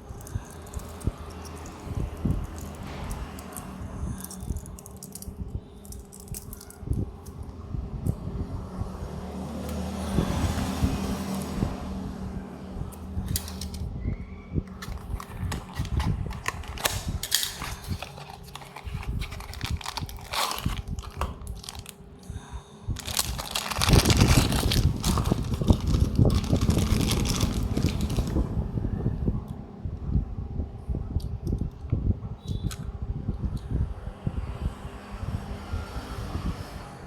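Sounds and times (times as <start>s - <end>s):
packaging crinkling and clicking: 0.0s - 7.4s, 14.7s - 22.0s, 23.0s - 28.4s
steady low hum: 0.0s - 37.0s
rubbing rumble: 14.6s - 21.9s, 22.9s - 29.2s.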